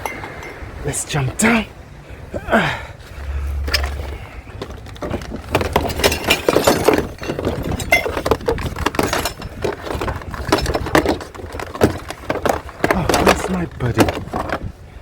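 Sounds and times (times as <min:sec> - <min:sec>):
scrap clattering and clinking: 0:03.2 - 0:14.7.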